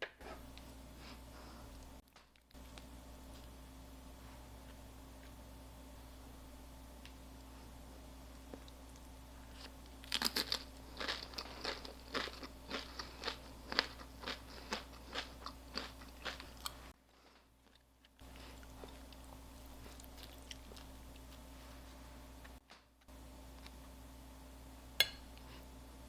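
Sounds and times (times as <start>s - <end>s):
person chewing crunchy food: 8.4s - 21.5s.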